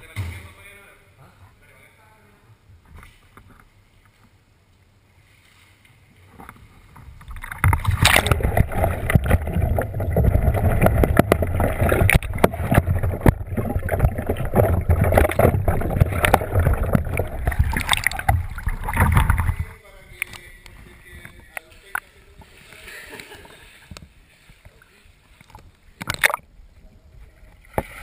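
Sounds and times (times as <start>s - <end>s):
water splashing and churning: 6.2s - 22.9s, 23.7s - 26.5s, 27.2s - 28.0s.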